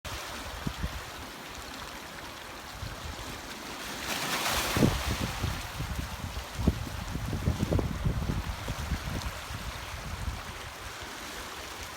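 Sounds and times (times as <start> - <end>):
sea waves washing ashore: 0.1 - 11.9
wind buffeting microphone: 0.5 - 1.2, 4.6 - 11.0.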